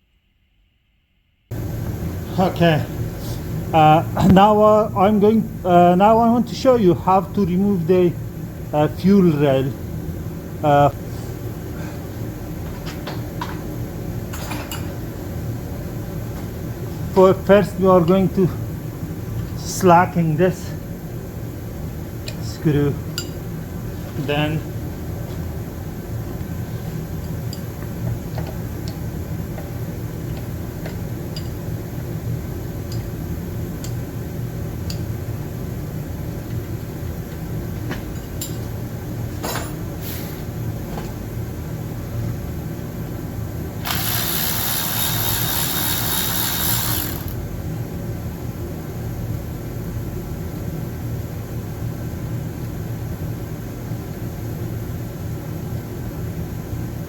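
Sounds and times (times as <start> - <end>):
low workshop hum: 0.0 - 57.0
hand tools clicking: 43.8 - 47.4.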